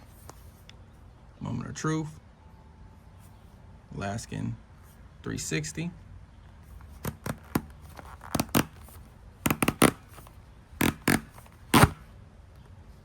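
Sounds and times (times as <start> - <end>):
packaging rustling: 6.9 - 12.0.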